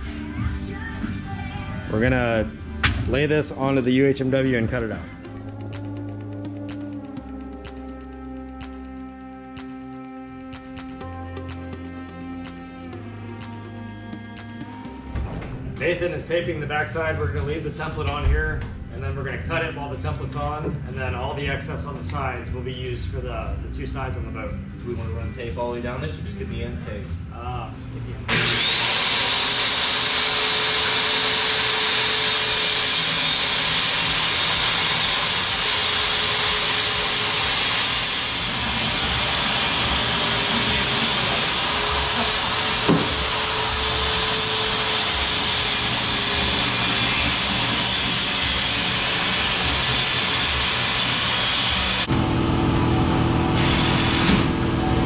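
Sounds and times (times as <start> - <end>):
power tool cutting plastic: 28.3 - 55.0.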